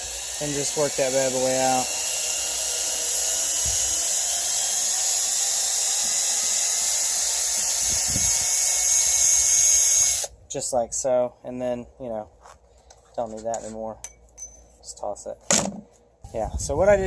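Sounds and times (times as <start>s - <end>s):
power drill whining: 0.0s - 10.3s.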